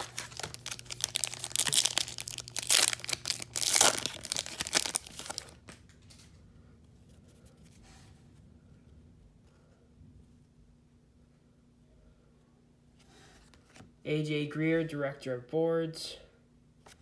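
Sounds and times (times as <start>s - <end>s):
card pack wrapper tearing: 0.0s - 5.7s.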